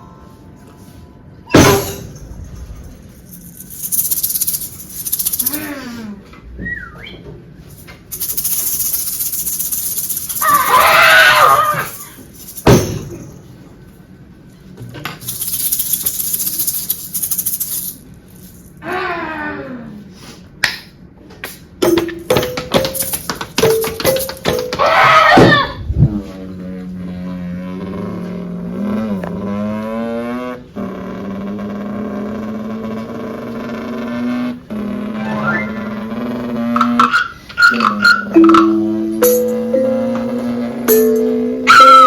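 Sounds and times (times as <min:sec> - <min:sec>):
shaker rattling: 0:02.0 - 0:05.9, 0:07.6 - 0:13.2, 0:15.2 - 0:18.8, 0:21.8 - 0:24.8, 0:37.8 - 0:39.9.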